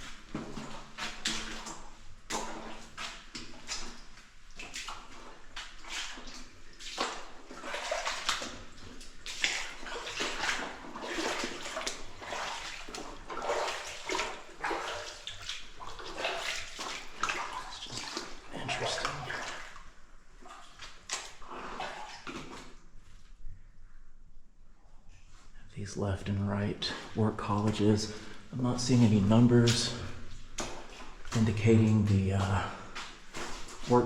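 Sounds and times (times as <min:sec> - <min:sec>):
footsteps splashing through water: 0:00.0 - 0:23.1, 0:26.7 - 0:34.0.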